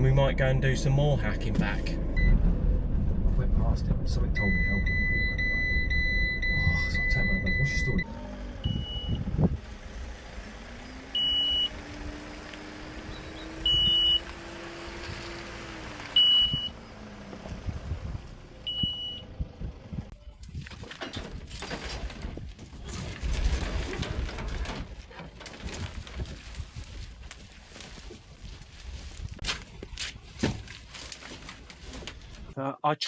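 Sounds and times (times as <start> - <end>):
van engine running: 0.0 - 20.1
short high warning beep: 4.4 - 8.0
knocks and rustling: 20.5 - 32.6.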